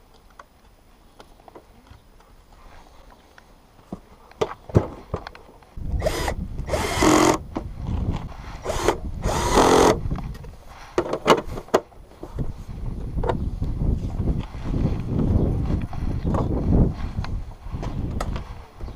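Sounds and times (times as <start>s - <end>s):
wind on microphone: 5.8s - 18.9s.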